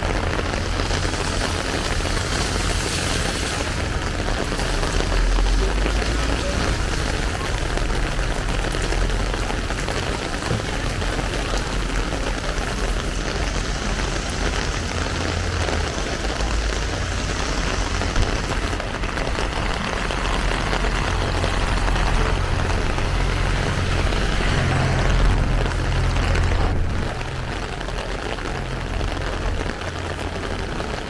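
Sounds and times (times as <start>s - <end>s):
heavy rain on street: 0.0s - 31.0s.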